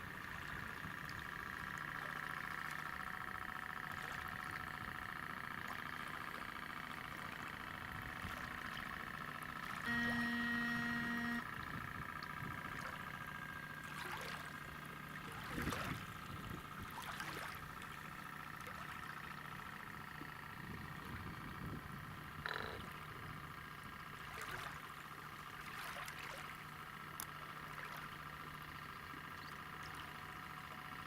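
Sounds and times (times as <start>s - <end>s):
high motor whine: 0.0s - 16.6s, 20.1s - 24.1s
boat horn blast: 9.6s - 11.6s, 22.4s - 22.9s.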